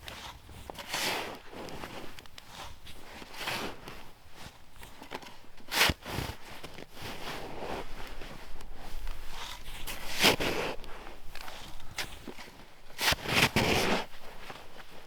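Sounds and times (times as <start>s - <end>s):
footsteps crunching through snow: 6.0s - 15.0s.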